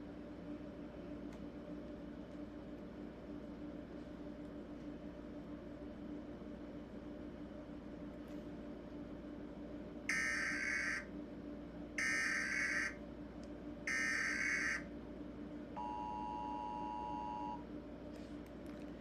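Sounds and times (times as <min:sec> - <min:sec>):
two-tone attention signal: 0:15.8 - 0:17.6.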